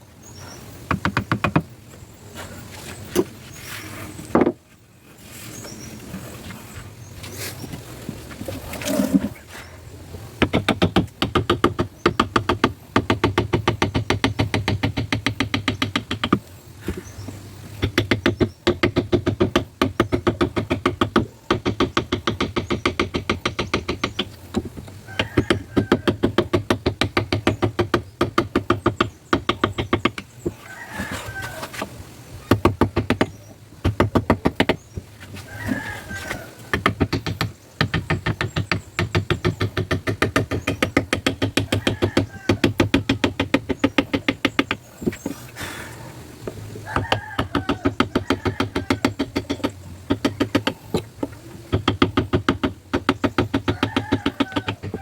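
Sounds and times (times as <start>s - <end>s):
mallet tapping carving chisel: 17.8s - 24.7s, 25.4s - 30.2s, 36.7s - 45.2s, 47.0s - 55.0s.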